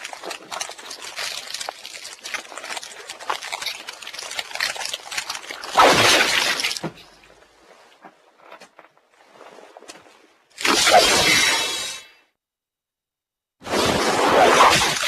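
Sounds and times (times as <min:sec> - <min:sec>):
crackling clicks: 0:00.0 - 0:06.8.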